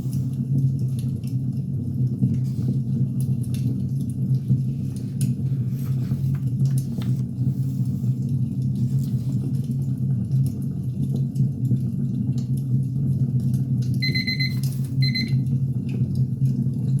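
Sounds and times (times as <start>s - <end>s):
electronic timer beeps: 14.0s - 15.5s.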